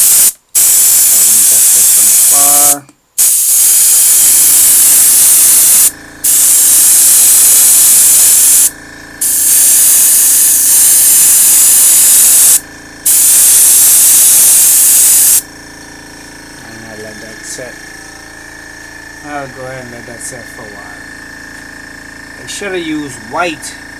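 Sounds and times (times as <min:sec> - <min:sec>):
airbrush spraying hiss: 0:00.0 - 0:15.4
compressor humming: 0:00.0 - 0:23.9.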